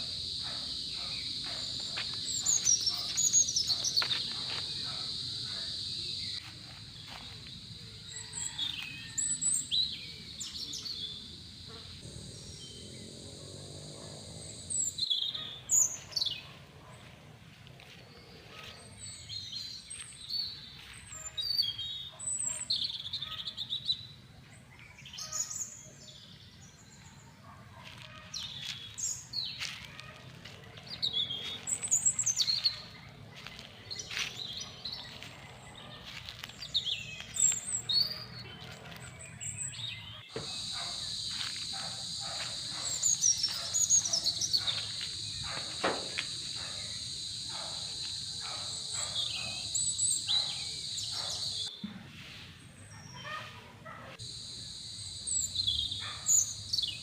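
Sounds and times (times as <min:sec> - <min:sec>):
crickets trilling: 0:00.0 - 0:24.1, 0:27.8 - 0:51.7, 0:54.2 - 0:57.0
birds chirping: 0:00.0 - 0:51.8, 0:52.6 - 0:57.0.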